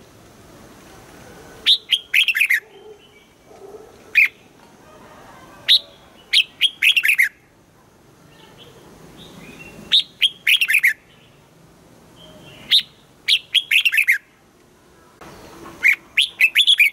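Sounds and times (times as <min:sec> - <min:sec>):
bulbul singing whistled notes: 0:12.2 - 0:14.3, 0:15.3 - 0:16.9.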